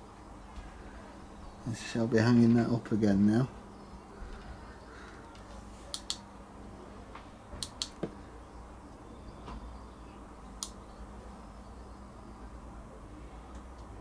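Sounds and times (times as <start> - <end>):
faint steady hum: 0.0 - 14.0
small sharp clicks and taps: 5.3 - 6.2.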